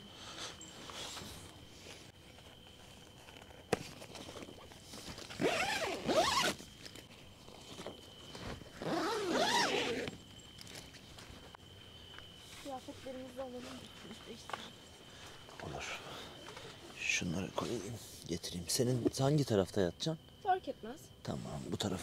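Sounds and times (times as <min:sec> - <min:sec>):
tent zipper pulled: 0:05.2 - 0:06.6, 0:08.8 - 0:10.2.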